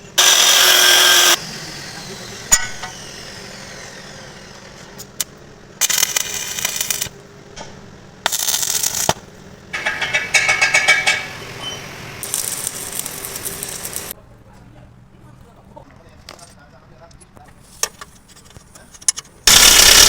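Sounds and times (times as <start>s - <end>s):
power tool rattling: 0.2s - 4.5s, 5.8s - 7.1s, 8.3s - 9.2s, 9.8s - 14.1s, 19.5s - 20.0s.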